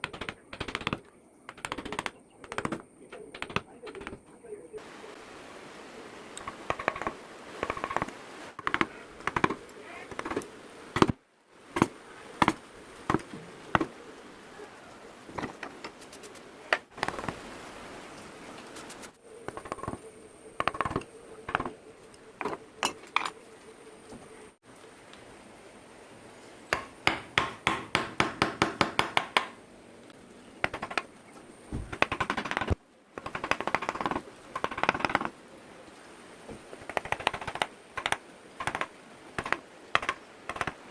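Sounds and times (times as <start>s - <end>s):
chisel tapping wood: 6.4s - 10.4s, 26.7s - 29.6s.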